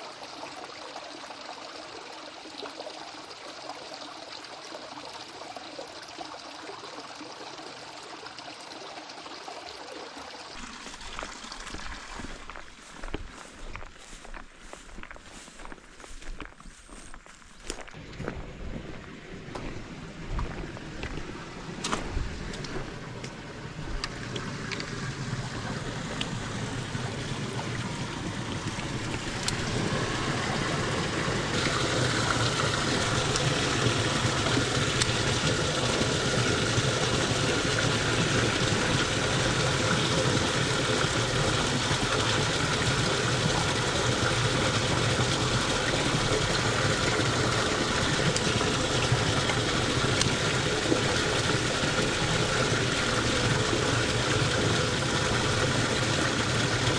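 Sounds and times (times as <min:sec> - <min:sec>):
water rushing down a channel: 0:00.0 - 0:15.5, 0:17.8 - 0:56.9.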